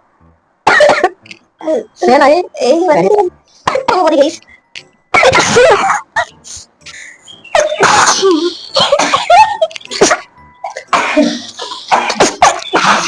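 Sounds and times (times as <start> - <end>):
person sneezing loudly: 7.7 - 8.4.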